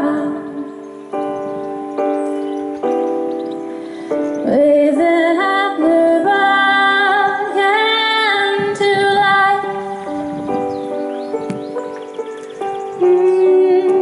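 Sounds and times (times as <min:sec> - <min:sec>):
woman singing slow melody: 0:00.0 - 0:01.0, 0:04.2 - 0:10.6, 0:12.8 - 0:14.0.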